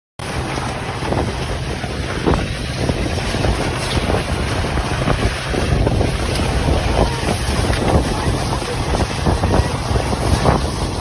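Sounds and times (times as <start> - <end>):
strong wind buffeting microphone: 0.2 - 11.0.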